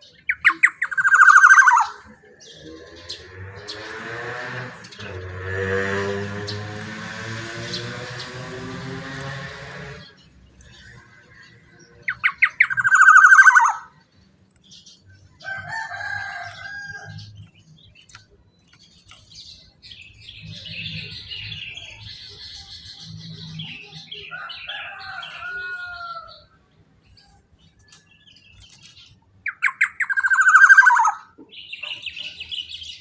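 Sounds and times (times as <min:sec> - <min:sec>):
oriole calling: 0:00.0 - 0:14.0, 0:29.4 - 0:32.2.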